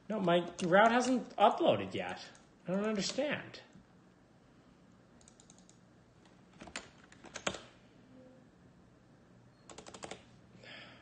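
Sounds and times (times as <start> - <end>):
keyboard typing: 5.2 - 7.7, 9.6 - 10.3.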